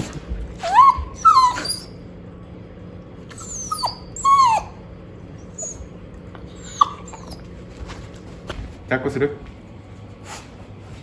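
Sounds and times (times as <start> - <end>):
dog whining cries: 0.5 - 2.0, 3.3 - 7.6.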